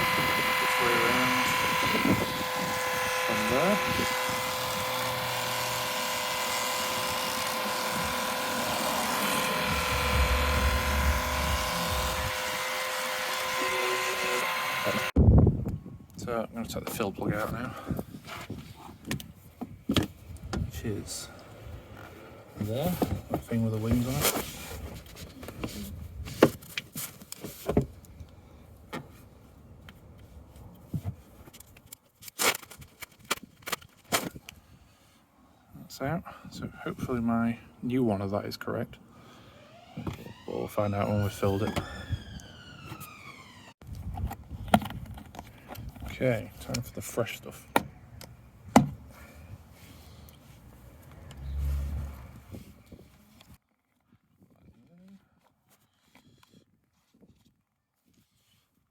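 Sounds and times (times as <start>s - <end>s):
electric pump motor whine: 0.0s - 15.2s, 39.2s - 43.9s
low thudding rumble: 9.5s - 12.7s.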